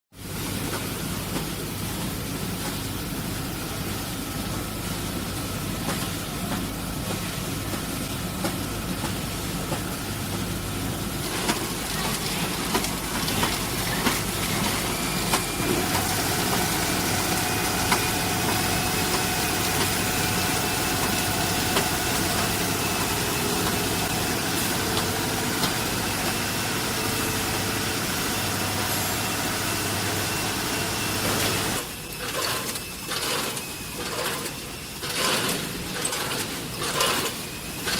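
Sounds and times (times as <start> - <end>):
packing machine hum: 0.3 - 37.9
machine clicks and knocks: 32.2 - 37.9.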